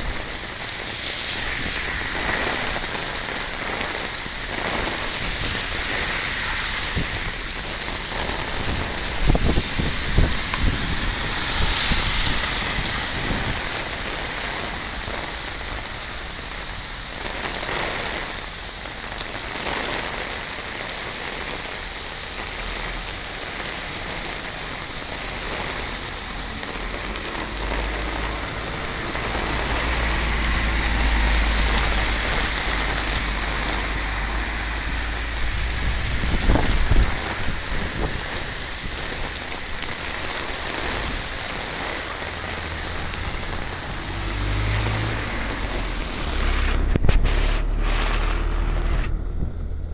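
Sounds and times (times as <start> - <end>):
rain falling: 0.0 - 49.2
deep low rumble: 43.0 - 49.9.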